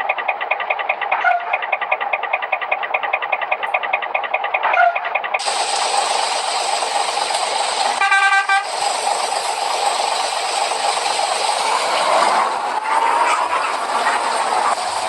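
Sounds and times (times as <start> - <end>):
bus air horn blast: 7.9 - 8.8.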